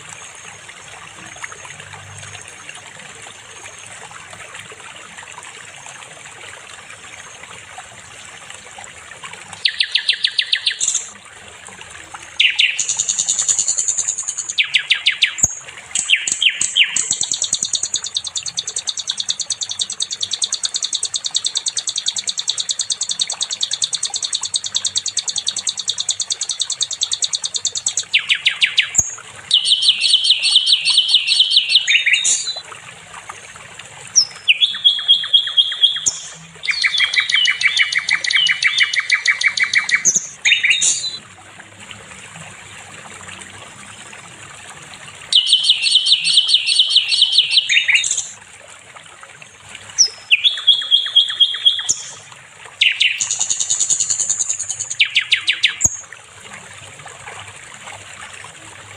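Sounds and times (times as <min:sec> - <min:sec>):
bird singing fast high trills: 0:09.6 - 0:11.1, 0:12.4 - 0:32.6, 0:34.2 - 0:41.2, 0:45.3 - 0:48.4, 0:50.0 - 0:56.1.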